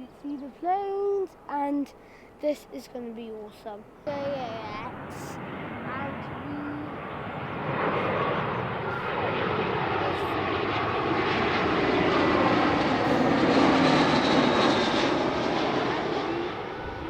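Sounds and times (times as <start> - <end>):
airliner engine noise overhead: 3.8 - 17.0
jet engine whine falling in pitch: 4.1 - 17.0.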